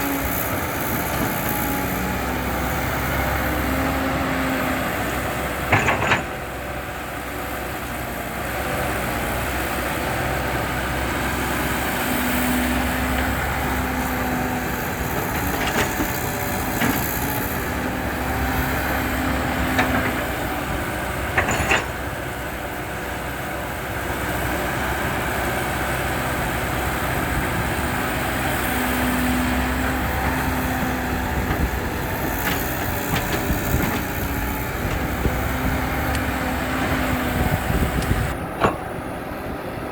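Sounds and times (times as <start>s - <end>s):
diesel engine running: 0.0s - 39.9s
loud metal clanks: 5.6s - 6.4s, 21.3s - 22.0s, 38.0s - 39.1s.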